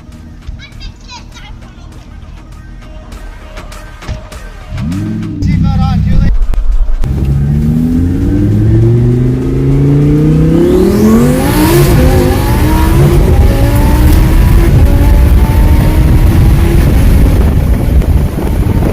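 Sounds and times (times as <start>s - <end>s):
car engine revving: 4.3s - 18.9s.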